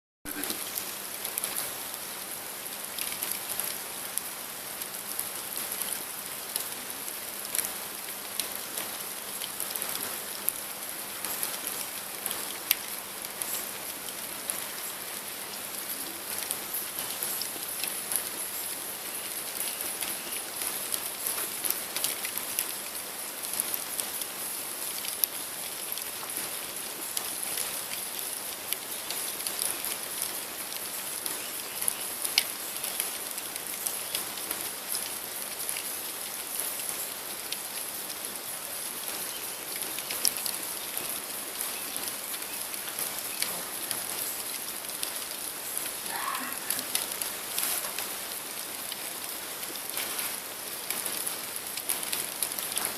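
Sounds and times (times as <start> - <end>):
campfire crackling: 41.5 - 52.9.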